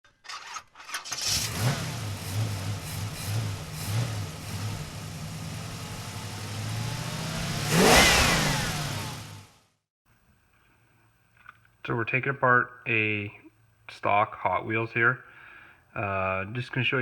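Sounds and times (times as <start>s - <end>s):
car engine revving: 1.2s - 9.6s
car passing with gliding pitch: 3.8s - 9.4s.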